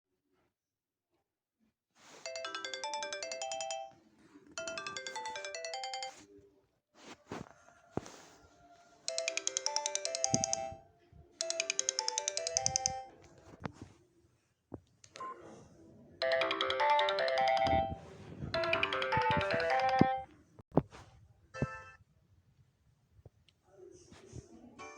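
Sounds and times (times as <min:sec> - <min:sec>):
rustling handling noise: 0:02.0 - 0:03.1, 0:07.0 - 0:10.8
phone ringtone: 0:02.2 - 0:04.0, 0:04.6 - 0:06.2, 0:09.1 - 0:10.8, 0:11.4 - 0:13.1, 0:16.2 - 0:20.3.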